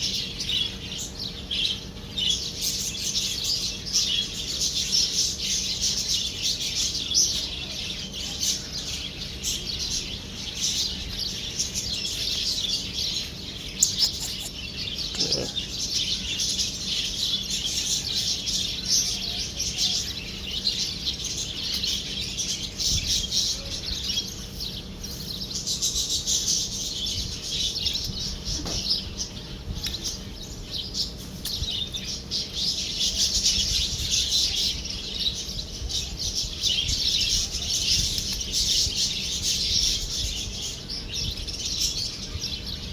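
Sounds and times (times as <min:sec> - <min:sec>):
birds chirping and twittering: 0:00.0 - 0:42.9.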